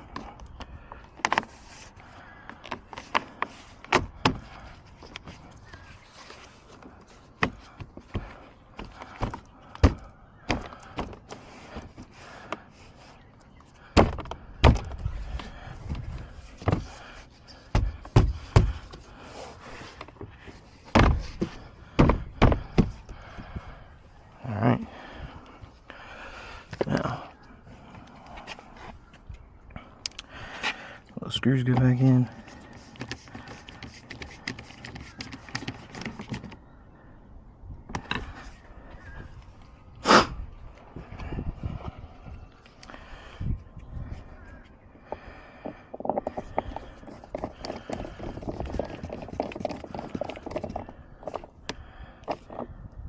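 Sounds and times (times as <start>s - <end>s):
small screws and screwdriver rattling: 45.9s - 51.5s.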